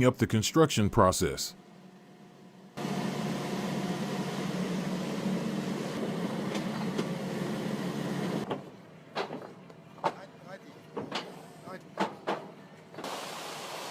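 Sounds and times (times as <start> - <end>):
mechanical running hum: 1.6 - 10.0.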